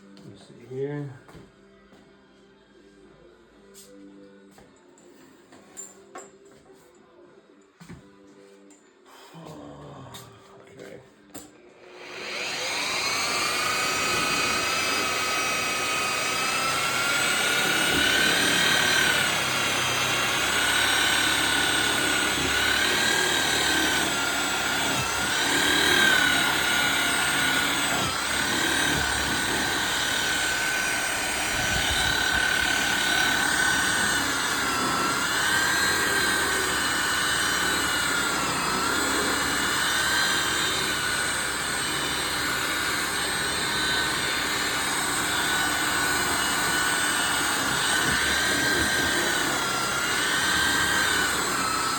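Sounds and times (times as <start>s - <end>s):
electric polisher motor whining: 11.8s - 51.9s.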